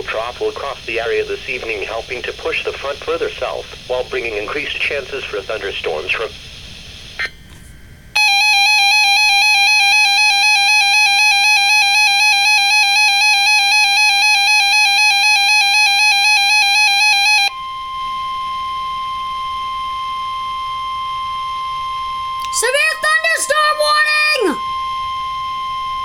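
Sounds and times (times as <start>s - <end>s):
steady single-pitch alarm tone: 7.1s - 26.0s.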